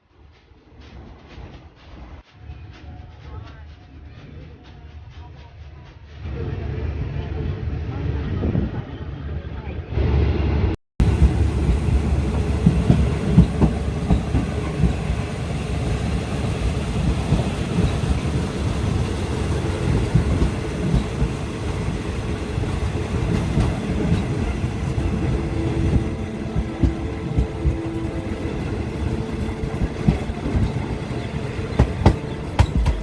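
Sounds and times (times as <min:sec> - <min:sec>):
train rumbling: 0:00.0 - 0:33.0
wheels clattering on rails: 0:29.3 - 0:33.0.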